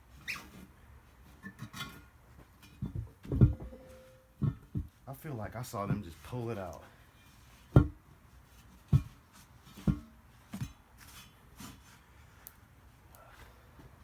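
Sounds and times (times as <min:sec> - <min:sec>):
tire irons knocking: 0:01.4 - 0:05.1, 0:07.7 - 0:08.1, 0:08.7 - 0:10.8.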